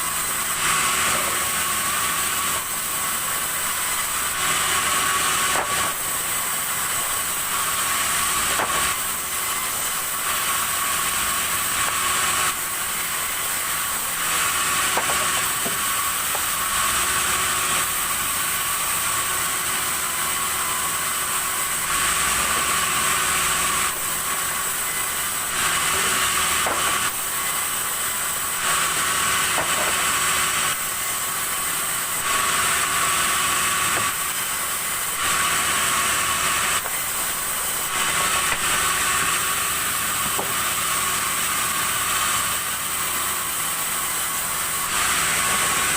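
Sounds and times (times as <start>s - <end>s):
sawmill saw cutting timber: 0.0s - 45.9s.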